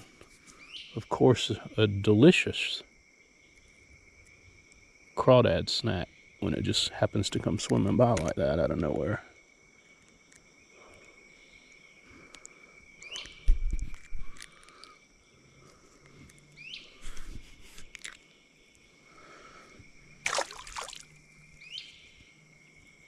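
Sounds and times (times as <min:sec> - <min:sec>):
high insect drone: 0:00.0 - 0:23.0
splash: 0:20.2 - 0:21.2.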